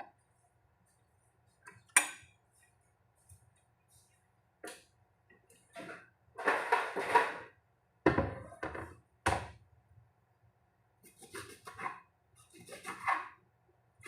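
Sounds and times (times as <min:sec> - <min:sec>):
knocks and scraping: 0:05.7 - 0:07.6.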